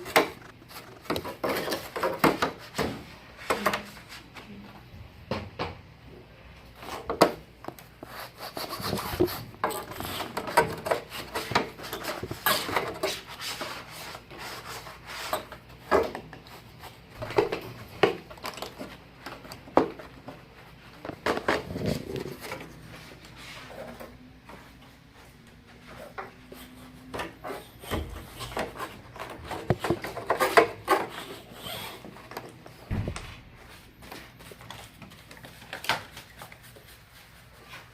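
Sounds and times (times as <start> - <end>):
rubbing and scraping: 8.0 - 18.0, 20.9 - 24.2
hard objects clicking and knocking: 27.9 - 31.3.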